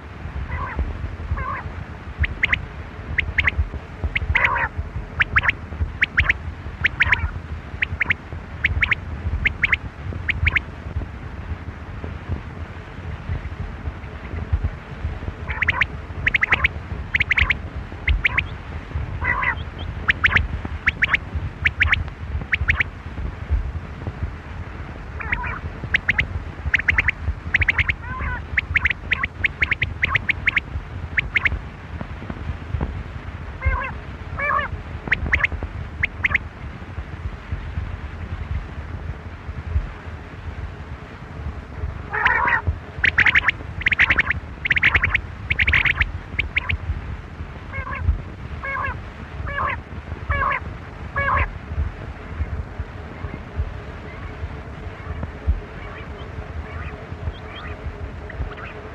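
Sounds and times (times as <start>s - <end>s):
low rumble: 0.0s - 58.9s
low bubbling bird calls: 2.2s - 2.6s, 3.2s - 10.6s, 15.5s - 18.6s, 19.2s - 22.9s, 25.2s - 31.6s, 35.1s - 36.4s, 42.2s - 46.8s, 55.7s - 58.9s
quail whistled calls: 2.2s - 2.6s, 3.2s - 10.6s, 15.5s - 18.6s, 19.2s - 22.9s, 25.2s - 30.6s, 31.2s - 31.6s, 33.6s - 36.4s, 42.1s - 46.8s, 55.8s - 58.8s.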